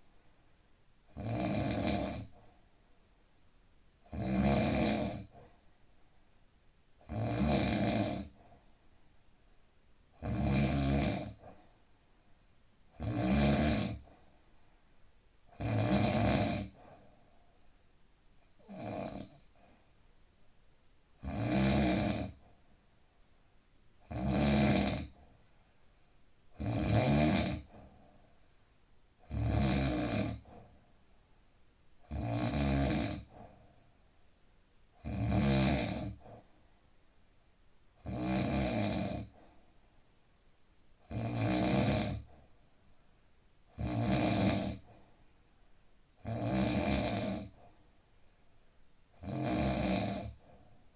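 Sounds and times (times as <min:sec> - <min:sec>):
man snoring: 0:01.2 - 0:02.3, 0:04.1 - 0:05.3, 0:07.1 - 0:08.4, 0:10.2 - 0:11.5, 0:13.0 - 0:14.1, 0:15.6 - 0:16.8, 0:18.6 - 0:19.4, 0:21.2 - 0:22.4, 0:24.1 - 0:25.2, 0:26.6 - 0:27.8, 0:29.2 - 0:30.5, 0:32.1 - 0:33.3, 0:35.0 - 0:36.3, 0:38.0 - 0:39.3, 0:41.1 - 0:42.3, 0:43.8 - 0:44.9, 0:46.2 - 0:47.6, 0:49.2 - 0:50.5.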